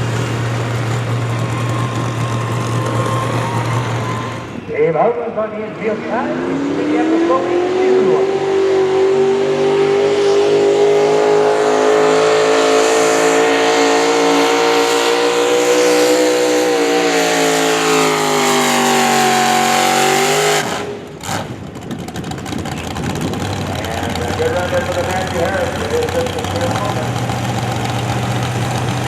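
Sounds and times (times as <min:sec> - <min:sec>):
engine at full throttle: 0:00.0 - 0:29.0.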